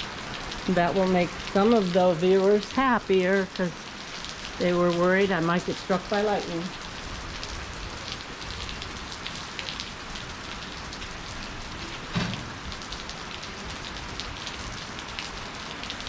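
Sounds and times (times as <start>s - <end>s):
pouring rain: 0.0s - 16.0s
raindrops splashing: 0.0s - 16.0s
thump: 12.1s - 12.7s.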